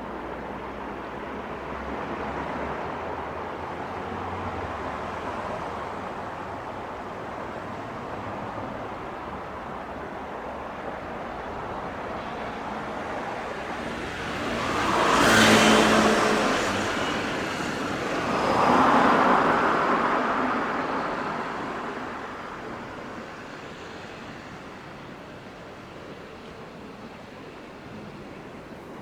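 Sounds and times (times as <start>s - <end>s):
background traffic noise: 0.0s - 29.0s
vehicles passing close: 11.6s - 24.6s.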